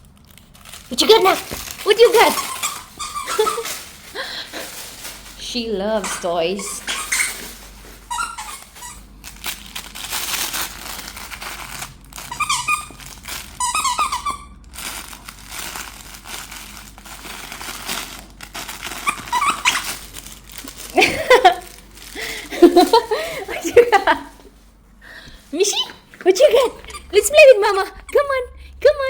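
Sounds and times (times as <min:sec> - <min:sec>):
toy crinkling and rustling: 0:00.0 - 0:24.7, 0:25.4 - 0:27.8
high-pitched squeaks: 0:01.0 - 0:03.9, 0:06.0 - 0:09.0, 0:12.2 - 0:14.6, 0:18.9 - 0:20.0.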